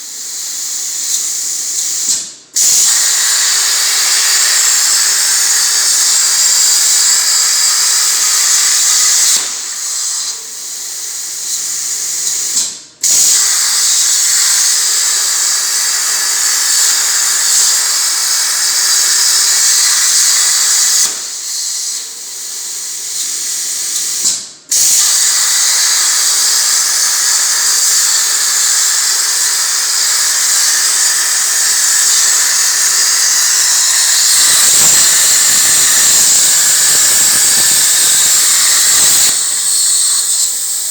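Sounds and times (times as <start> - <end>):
plasma cutting torch hissing: 0.0 - 40.9.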